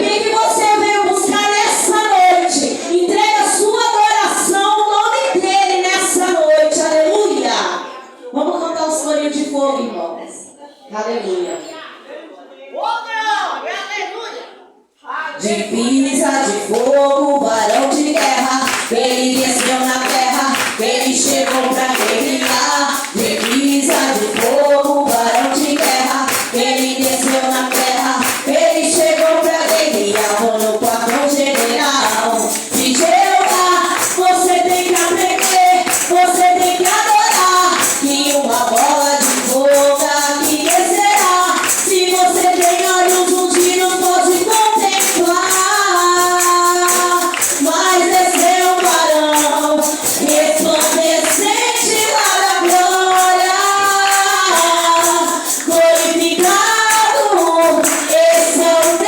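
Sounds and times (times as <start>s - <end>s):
congregation singing: 0.0s - 8.2s, 15.1s - 59.0s
hand-clapping: 16.7s - 59.0s.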